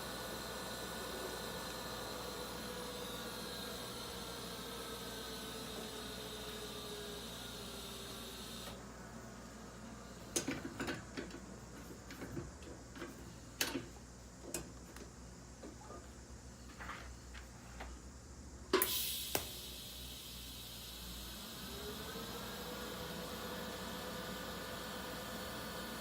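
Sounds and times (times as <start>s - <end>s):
welding arc hissing: 18.8s - 26.0s.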